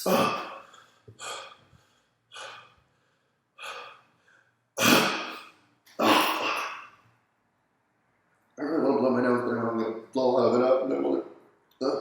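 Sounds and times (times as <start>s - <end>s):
loud sneeze: 0.0s - 0.6s, 4.8s - 7.0s
man gasping: 0.0s - 4.5s.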